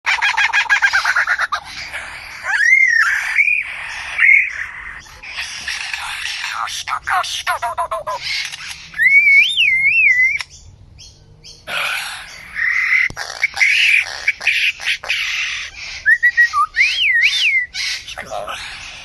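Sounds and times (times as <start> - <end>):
bird harsh raspy calls: 0.1 - 19.0
bird warbling whistle: 8.9 - 10.6, 15.9 - 18.1.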